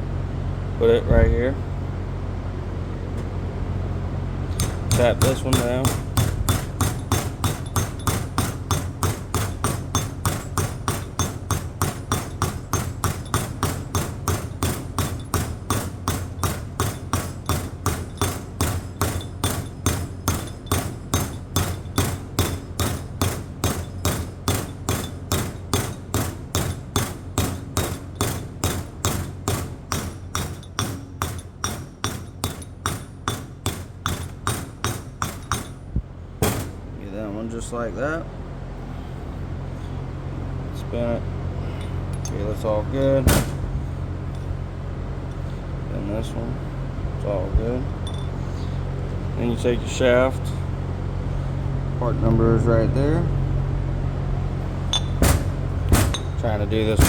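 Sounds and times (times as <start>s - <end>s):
hammer tapping on metal: 4.6s - 35.8s.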